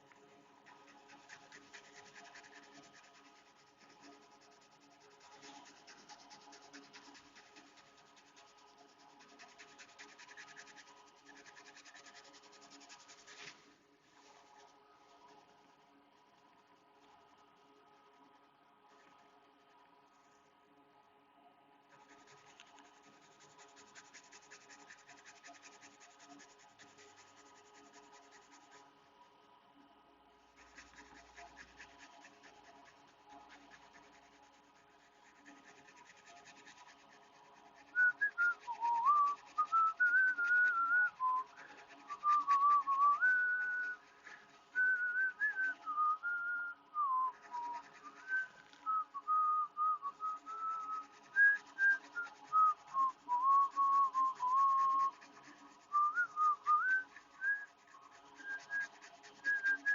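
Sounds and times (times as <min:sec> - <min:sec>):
fast scratchy scrubbing: 0:00.0 - 0:15.6, 0:21.9 - 0:28.9, 0:30.5 - 0:46.1, 0:47.1 - 0:48.8, 0:50.0 - 0:59.9
faint steady hum: 0:00.0 - 0:59.9
person whistling a tune: 0:37.9 - 0:44.1, 0:44.7 - 0:55.3, 0:55.9 - 0:59.9.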